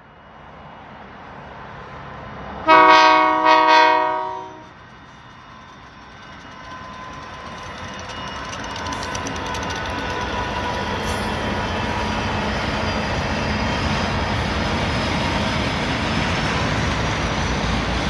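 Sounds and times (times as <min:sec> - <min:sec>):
train rumble: 0:01.2 - 0:18.0
train horn blowing a chord: 0:02.6 - 0:04.7.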